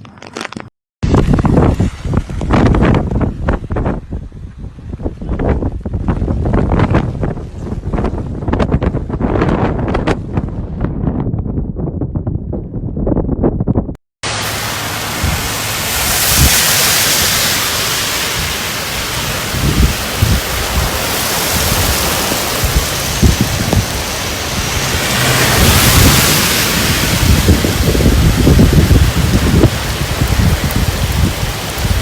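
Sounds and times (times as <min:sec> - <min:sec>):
heavy rain pouring: 0:14.2 - 0:32.0.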